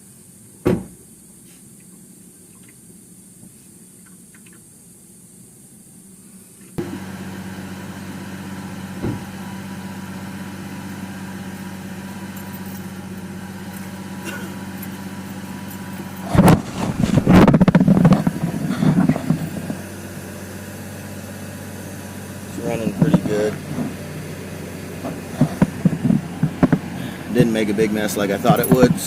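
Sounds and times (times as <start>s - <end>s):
engine idling: 6.7s - 29.0s
clattering and rustling: 15.7s - 19.8s.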